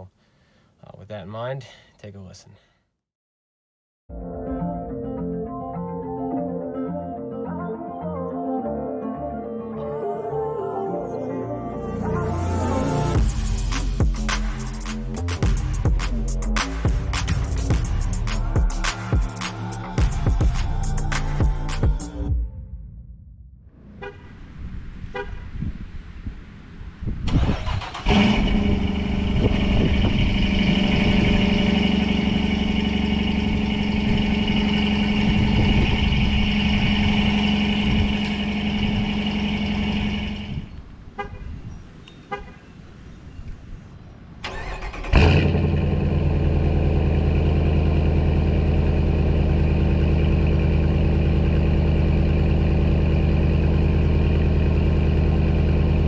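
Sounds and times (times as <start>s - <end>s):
car engine starting and idling: 27.2s - 40.7s, 44.4s - 56.0s
clicks before engine start: 44.4s - 45.4s.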